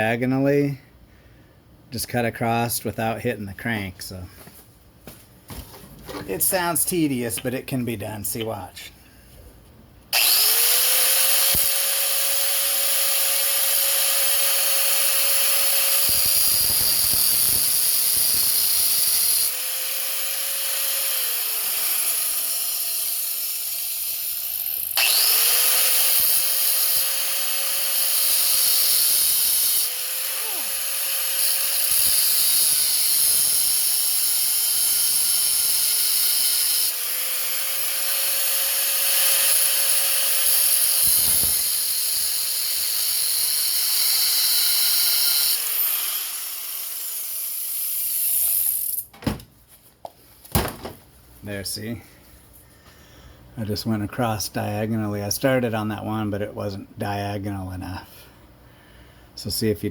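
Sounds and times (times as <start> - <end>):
rotary cutting tool whining on steel: 10.1 - 49.1.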